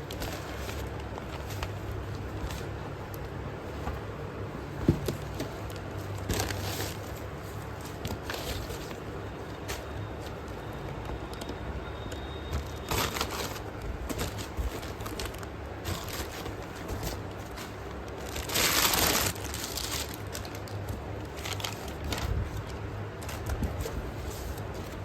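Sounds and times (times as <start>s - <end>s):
ripping rustle: 0.0s - 10.5s, 12.5s - 25.0s
plastic packaging crinkling: 5.1s - 11.6s, 12.4s - 25.0s.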